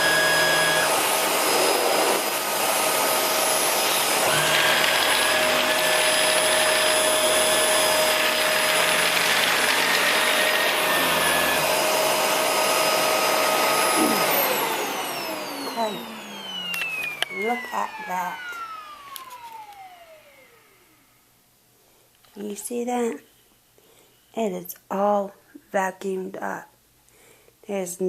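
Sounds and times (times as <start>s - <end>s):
vacuum cleaner running on carpet: 0.0s - 20.8s.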